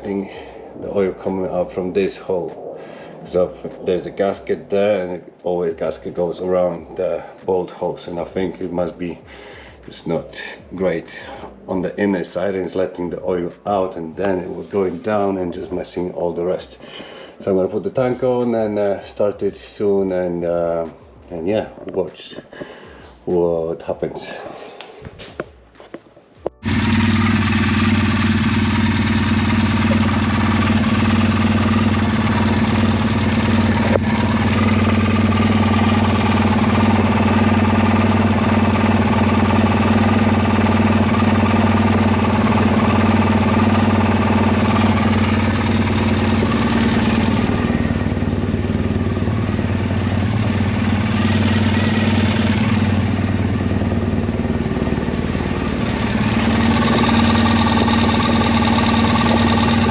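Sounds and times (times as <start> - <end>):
motorcycle engine idling: 0.0 - 4.9, 26.4 - 59.9.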